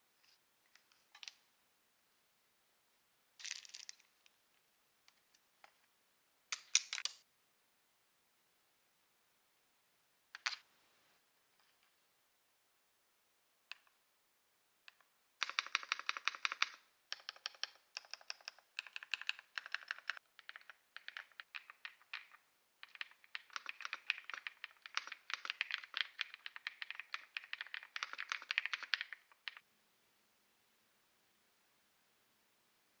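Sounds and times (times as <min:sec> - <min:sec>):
keyboard typing: 0:15.4 - 0:29.6.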